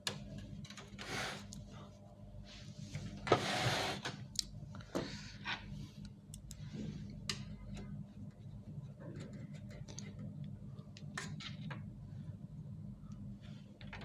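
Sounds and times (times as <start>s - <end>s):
low steady hum: 4.1s - 14.0s.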